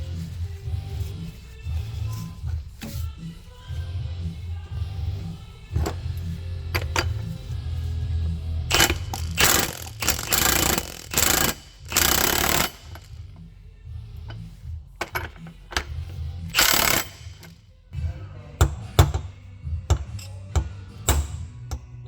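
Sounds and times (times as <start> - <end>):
background music: 0.0 - 22.0
power tool bursts: 8.7 - 13.1, 16.5 - 17.3.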